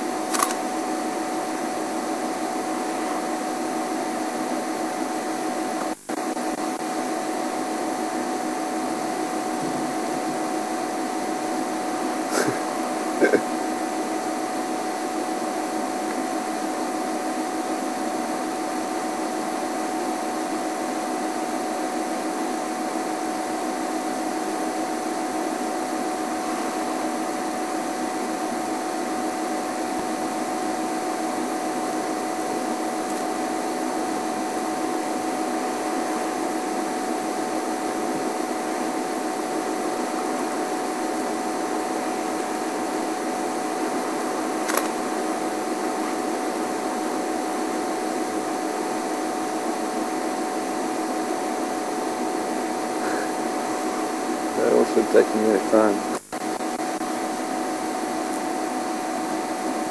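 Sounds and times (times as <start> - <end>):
faint hum tone: 0.0 - 59.9
short click: 0.3 - 0.6.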